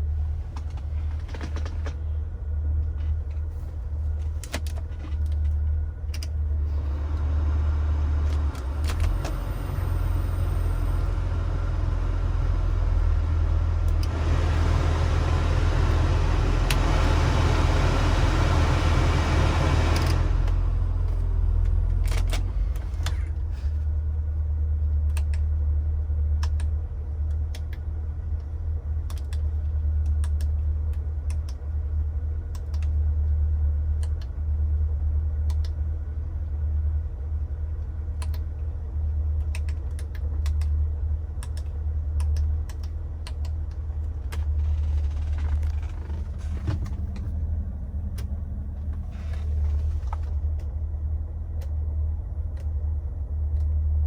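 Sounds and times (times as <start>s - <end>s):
car engine idling: 0.0s - 23.9s, 42.6s - 54.0s.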